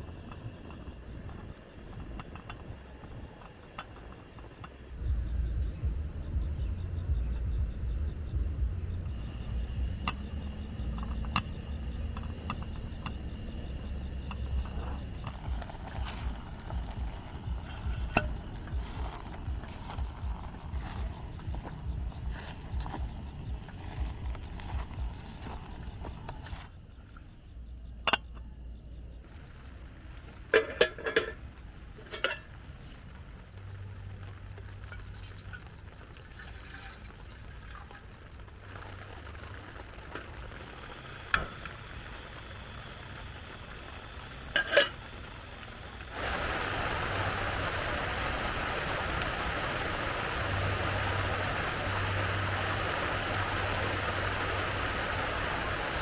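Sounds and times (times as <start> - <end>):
heavy rain hiss: 0.0 - 26.8, 29.0 - 56.0
rain tapping on a tent: 9.1 - 26.7, 29.3 - 56.0.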